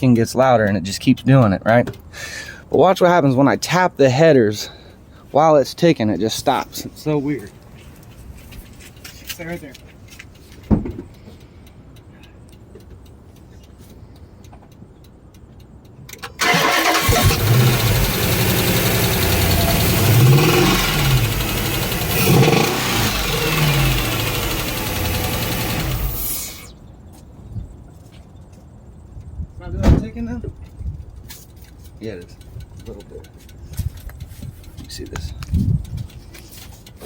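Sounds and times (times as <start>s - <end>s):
car engine starting and revving: 16.3s - 26.7s.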